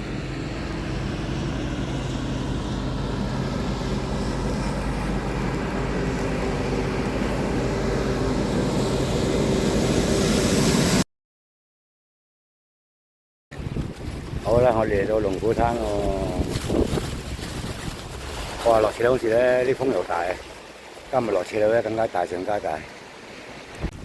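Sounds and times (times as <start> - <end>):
steady low hum: 0.0 - 11.0
wind rushing over microphone: 0.0 - 11.0, 13.5 - 19.1, 23.7 - 24.0.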